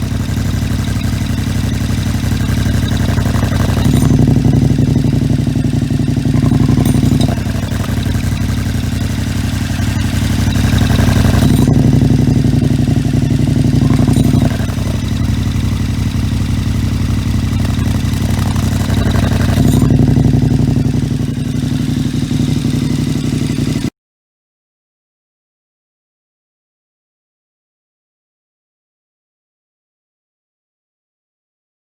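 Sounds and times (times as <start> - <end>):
motorcycle engine idling and revving: 0.0 - 23.9.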